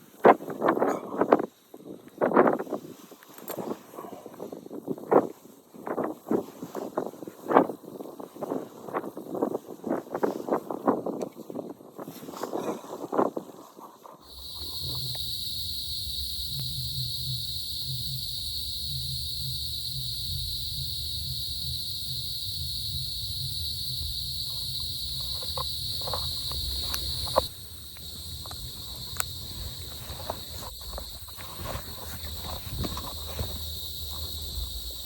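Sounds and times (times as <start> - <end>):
cicadas droning: 14.2 - 35.0
faint clicks: 24.4 - 31.5.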